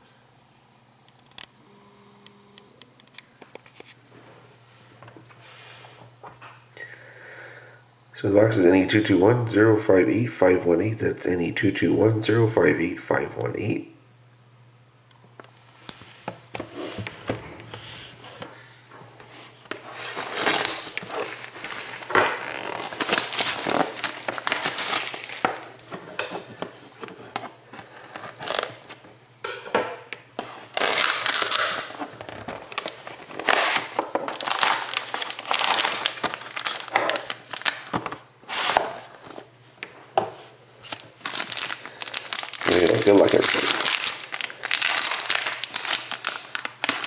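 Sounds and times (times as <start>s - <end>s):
faint low hum: 0.0s - 5.3s
plastic wrapping tearing and crinkling: 19.7s - 25.9s, 27.9s - 29.0s, 30.4s - 39.0s, 40.8s - 47.0s.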